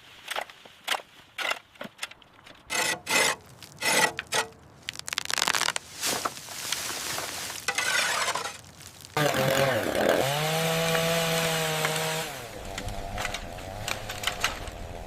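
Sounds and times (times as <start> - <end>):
scraping on hard surface: 2.6 - 4.6, 6.0 - 8.6.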